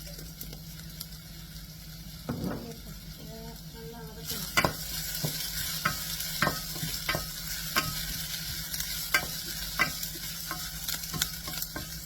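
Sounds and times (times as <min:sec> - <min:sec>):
onions sizzling in hot oil: 0:00.0 - 0:12.0
utensil clicking against pan: 0:09.1 - 0:12.0.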